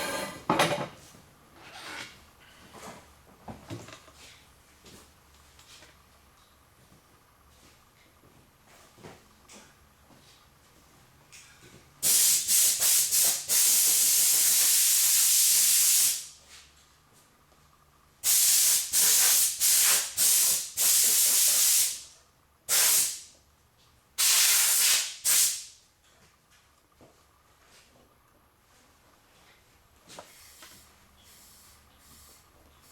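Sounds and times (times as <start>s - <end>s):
hissing pressurised spray bursts: 18.2s - 22.0s, 22.7s - 23.2s, 24.2s - 25.6s.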